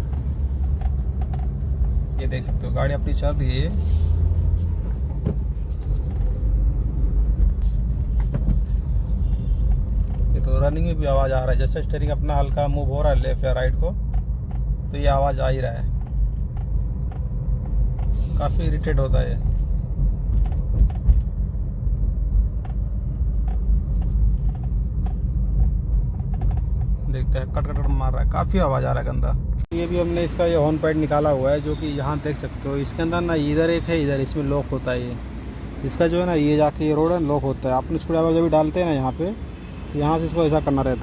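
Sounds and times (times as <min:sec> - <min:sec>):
faint steering knocks: 0:00.0 - 0:11.0, 0:13.6 - 0:28.4
car engine and road rumble: 0:00.0 - 0:41.0.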